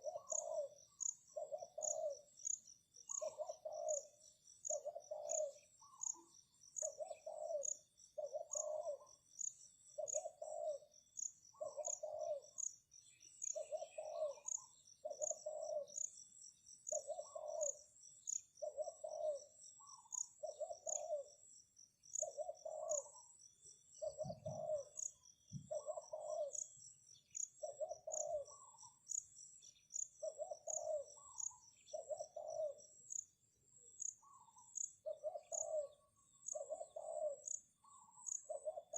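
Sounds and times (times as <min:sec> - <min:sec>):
doves cooing: 0:00.0 - 0:00.8, 0:01.4 - 0:02.3, 0:03.1 - 0:06.1, 0:06.8 - 0:09.1, 0:10.0 - 0:10.9, 0:11.6 - 0:12.5, 0:13.6 - 0:16.0, 0:16.9 - 0:17.8, 0:18.6 - 0:21.3, 0:22.2 - 0:23.2, 0:24.0 - 0:25.0, 0:25.6 - 0:26.6, 0:27.6 - 0:29.0, 0:30.2 - 0:32.8, 0:34.2 - 0:38.9
insect chirping: 0:00.0 - 0:38.9.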